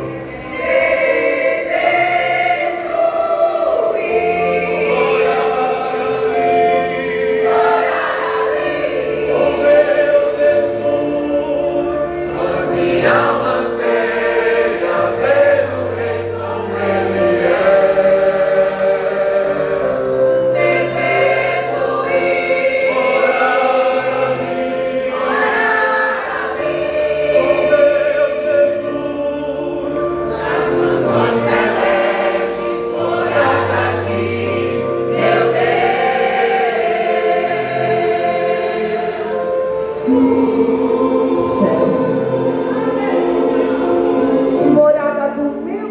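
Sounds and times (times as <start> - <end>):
choir singing gospel: 0.0 - 45.9.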